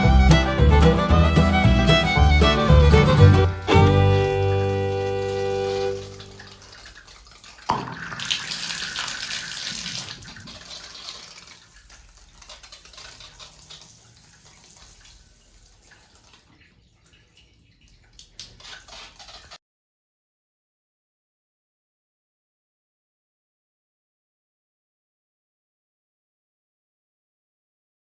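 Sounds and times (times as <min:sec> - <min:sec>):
water running: 0:00.8 - 0:19.6.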